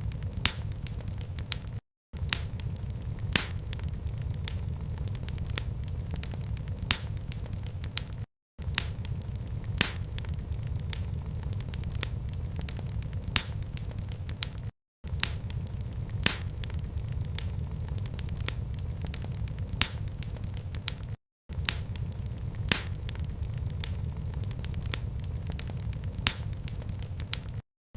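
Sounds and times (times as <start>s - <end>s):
fire popping: 0.0s - 27.6s
wood fire crackling: 0.0s - 27.6s
low steady rumble: 2.3s - 7.3s, 8.8s - 14.0s, 15.2s - 20.5s, 21.6s - 26.6s.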